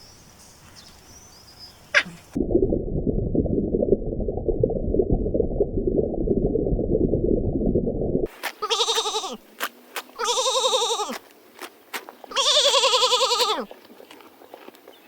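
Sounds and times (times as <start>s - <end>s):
low rumbling noise: 2.1s - 8.3s
goat bleating: 8.6s - 9.4s, 10.2s - 11.2s, 12.3s - 13.7s.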